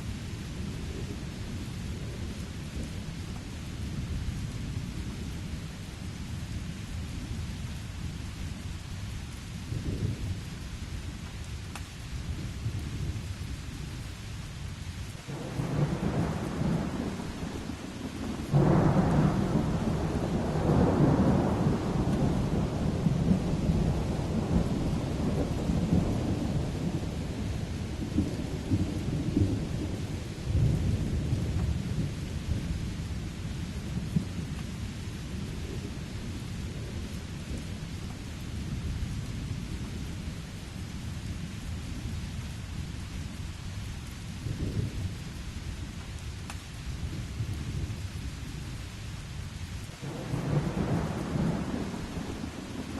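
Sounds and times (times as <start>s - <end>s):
steady rain: 0.0s - 52.9s
rolling thunder: 15.3s - 34.6s, 50.0s - 52.9s.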